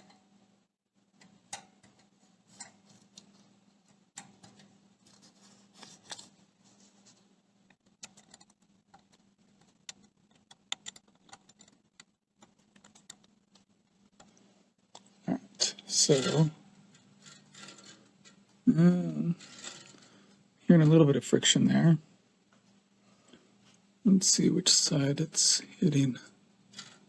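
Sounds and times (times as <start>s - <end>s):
faint low hum: 0.0s - 27.0s
metallic clicks and taps: 7.7s - 13.6s.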